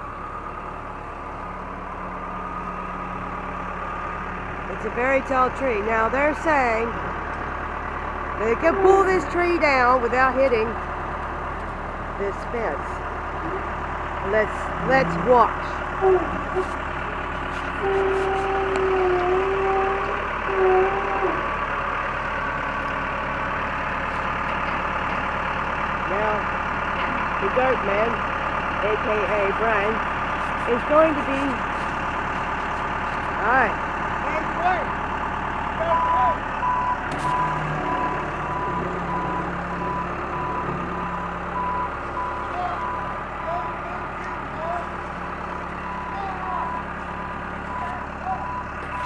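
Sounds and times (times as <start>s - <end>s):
diesel engine running: 0.0s - 49.0s
reverse warning alarm beeping: 14.2s - 16.8s, 35.8s - 44.0s, 45.7s - 47.0s, 47.6s - 49.0s.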